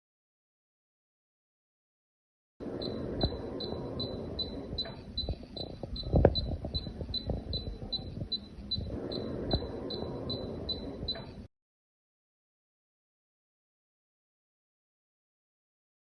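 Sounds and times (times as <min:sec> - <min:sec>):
rapid high beeps: 0:02.7 - 0:11.4.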